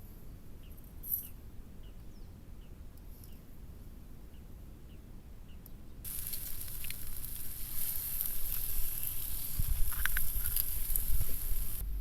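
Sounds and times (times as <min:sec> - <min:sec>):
faint bird chirps: 0:00.5 - 0:03.6
food sizzling in a pan: 0:06.1 - 0:11.8.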